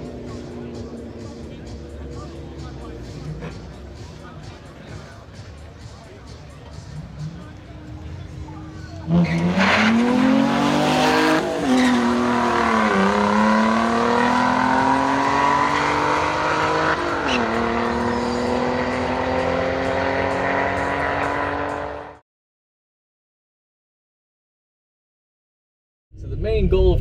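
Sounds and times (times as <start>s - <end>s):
car accelerating hard: 8.9s - 22.2s.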